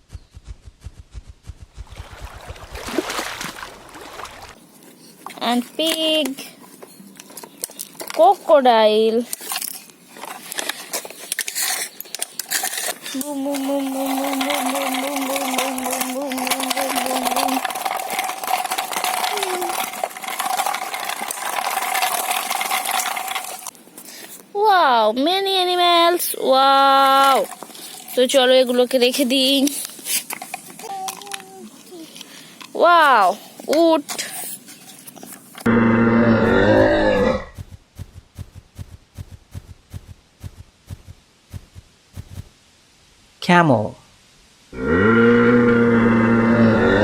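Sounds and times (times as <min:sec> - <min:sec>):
plastic gear rattle: 0:09.3 - 0:24.4
toy motor whine: 0:11.3 - 0:23.7.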